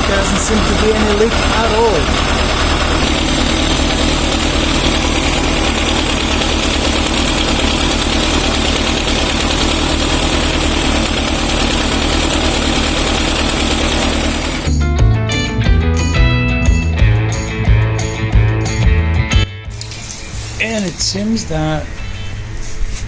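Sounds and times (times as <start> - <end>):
motorcycle engine idling: 0.0 - 19.2.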